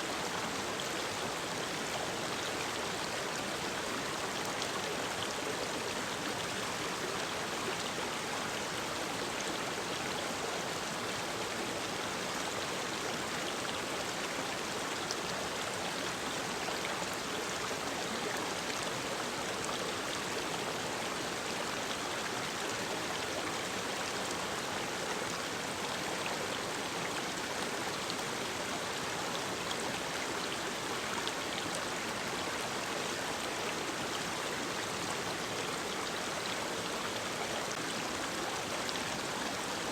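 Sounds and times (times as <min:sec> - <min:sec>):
stream running over rocks: 0:00.0 - 0:39.9.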